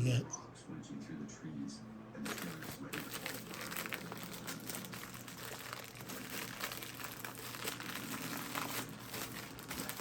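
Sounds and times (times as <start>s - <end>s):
packaging crinkling: 2.2s - 10.0s.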